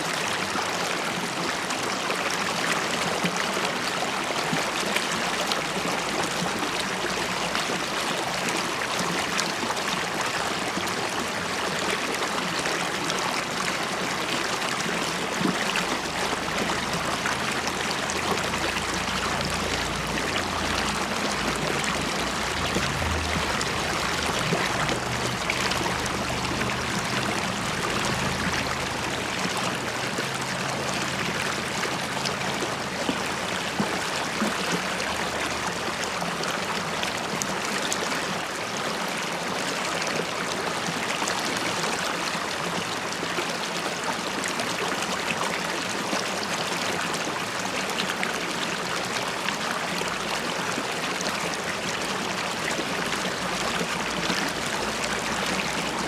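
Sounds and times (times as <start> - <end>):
river water burbling over stones: 0.0 - 56.0
faint low rumble: 15.7 - 33.9.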